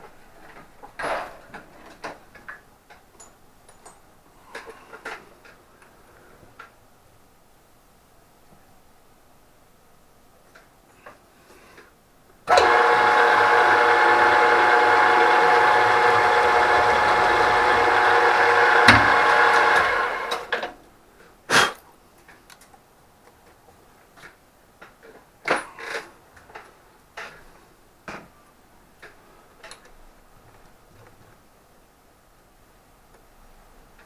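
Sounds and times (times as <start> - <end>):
machine tool motor running: 12.5 - 20.5.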